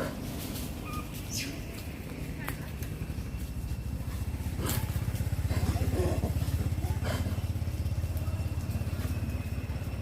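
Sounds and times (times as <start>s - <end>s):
engine idling: 0.0s - 10.0s.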